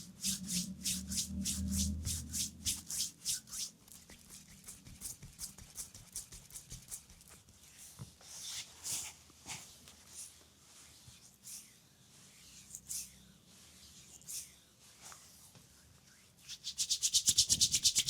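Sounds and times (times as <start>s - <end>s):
hands rubbing skin swishing: 0.0s - 9.1s, 16.5s - 18.0s.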